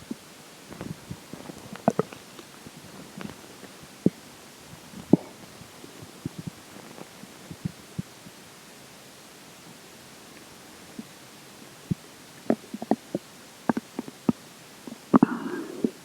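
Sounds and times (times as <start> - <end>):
stomach gurgling: 0.0 - 8.4, 11.8 - 16.0
steady hiss: 0.0 - 16.0.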